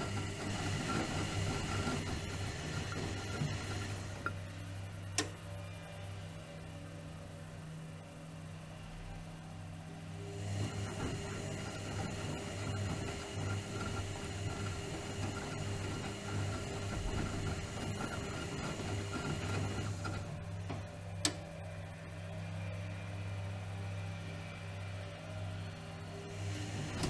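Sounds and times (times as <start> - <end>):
washing machine churning: 0.0 - 5.5, 10.2 - 21.3, 26.2 - 27.0
washing machine hum: 0.0 - 8.8, 9.7 - 24.5, 25.1 - 27.0.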